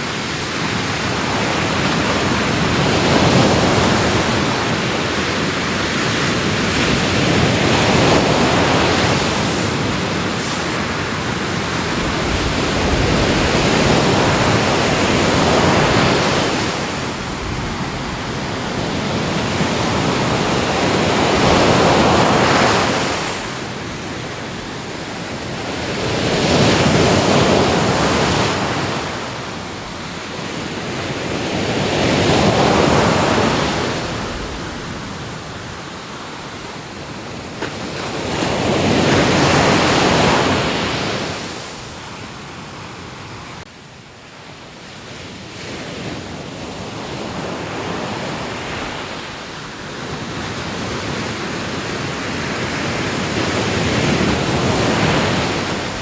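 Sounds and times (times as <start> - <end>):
waves breaking on shore: 0.0 - 56.0.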